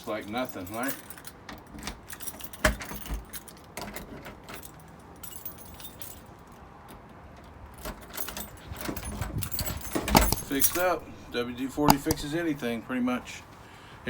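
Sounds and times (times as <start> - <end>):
keys jangling: 0.0 - 6.6, 7.7 - 12.6
key clicking in door lock: 9.0 - 12.6.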